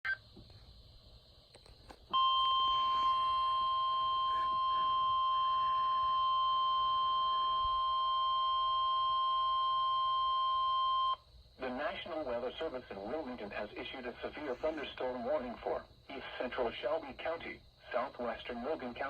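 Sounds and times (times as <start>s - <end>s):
steady high alarm tone: 2.1s - 11.2s.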